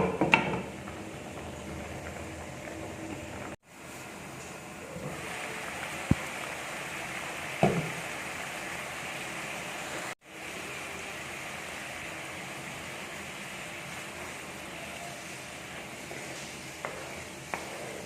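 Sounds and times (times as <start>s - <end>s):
pot of liquid boiling: 0.0s - 18.0s.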